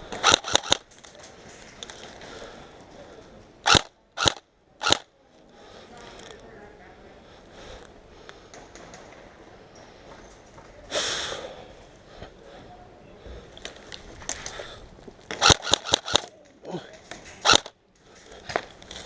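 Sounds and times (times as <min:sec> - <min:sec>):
airsoft rifle shots: 0:00.1 - 0:00.9, 0:03.6 - 0:05.1, 0:15.3 - 0:16.3, 0:17.4 - 0:17.7.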